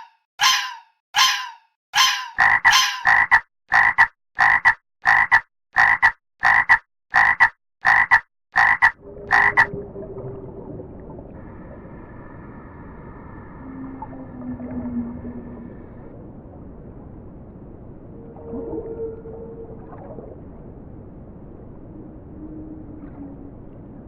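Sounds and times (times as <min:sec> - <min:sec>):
animal croaking call: 0:00.0 - 0:09.7.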